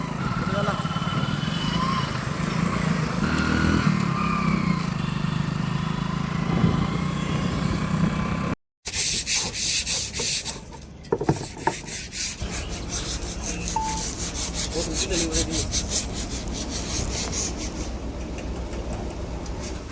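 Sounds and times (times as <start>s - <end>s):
rhythmic rasping scrape: 11.4s - 18.8s
diesel engine running: 12.5s - 19.9s.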